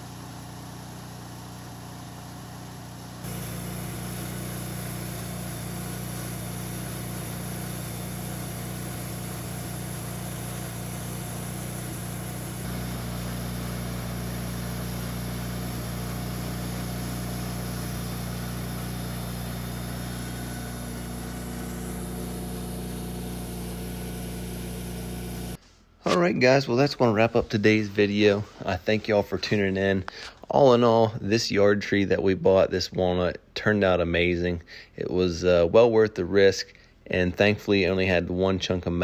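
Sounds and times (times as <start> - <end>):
engine idling: 0.0 - 25.6.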